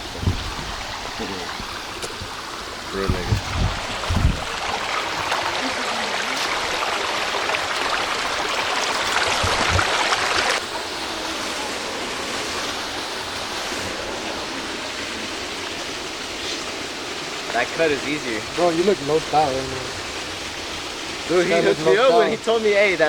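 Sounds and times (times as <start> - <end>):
creek water flowing: 0.0 - 23.0.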